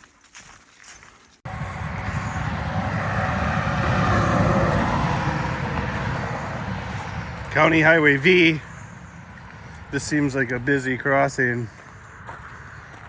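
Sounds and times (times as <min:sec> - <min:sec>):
vehicle passing on highway: 0:01.5 - 0:13.0.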